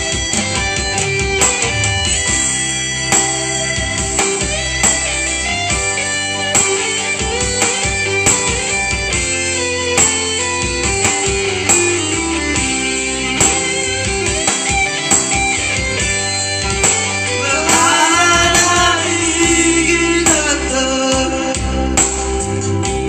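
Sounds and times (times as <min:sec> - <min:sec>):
steady beat: 0:00.0 - 0:22.2
guitar: 0:00.0 - 0:23.0
person singing: 0:17.3 - 0:22.5.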